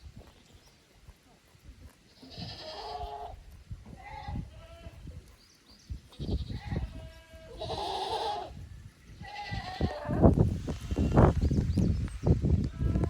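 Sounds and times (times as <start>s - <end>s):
wind rumbling on microphone: 1.6s - 13.0s
goats bleating: 2.2s - 3.4s, 6.2s - 8.6s, 9.2s - 10.2s.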